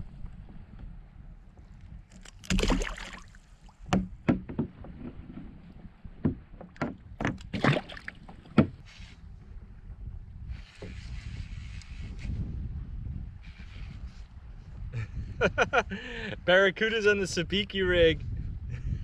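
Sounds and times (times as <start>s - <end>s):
water and wind noise: 0.0s - 19.0s
water splash: 2.2s - 3.8s, 7.5s - 8.6s
knocks on a kayak: 3.8s - 5.4s, 6.2s - 8.8s.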